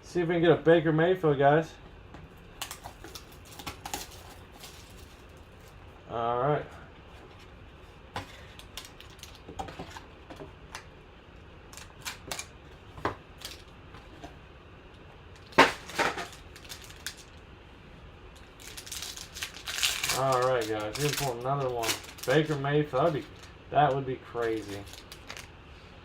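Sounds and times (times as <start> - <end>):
card wrappers rustling and clicking: 2.6 - 5.8, 8.2 - 10.9, 11.7 - 14.3, 15.3 - 17.4, 18.3 - 25.6.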